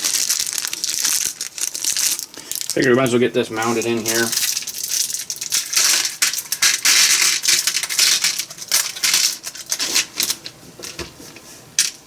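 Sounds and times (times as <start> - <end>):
small metal screws rattling: 4.1 - 10.4.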